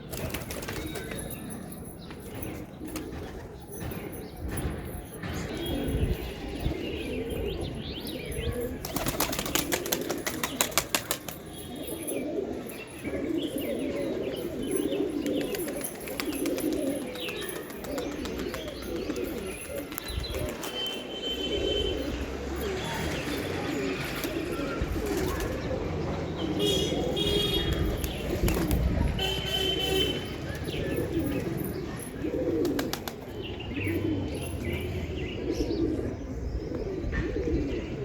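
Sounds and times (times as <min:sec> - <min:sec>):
pigeons cooing: 0:00.0 - 0:38.0.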